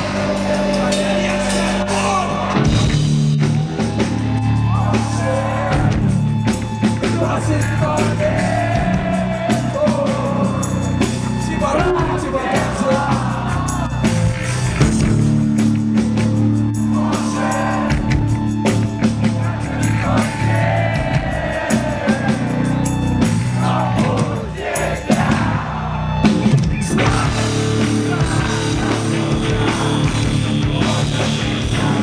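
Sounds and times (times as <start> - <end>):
live rock band playing: 0.0 - 25.6, 26.2 - 32.0
person singing: 26.9 - 32.0.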